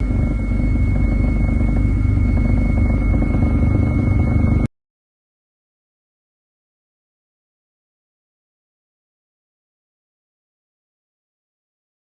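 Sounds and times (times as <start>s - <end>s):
high-pitched whine: 0.0s - 4.7s.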